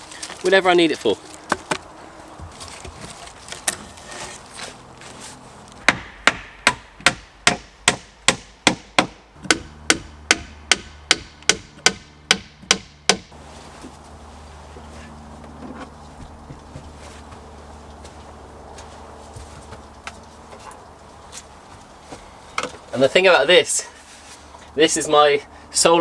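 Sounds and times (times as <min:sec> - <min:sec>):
hammer striking wood: 0:05.8 - 0:13.4.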